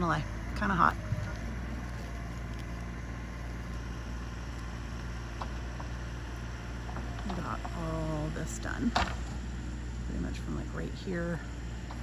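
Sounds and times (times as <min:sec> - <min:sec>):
excavator engine droning: 0:00.0 - 0:12.0.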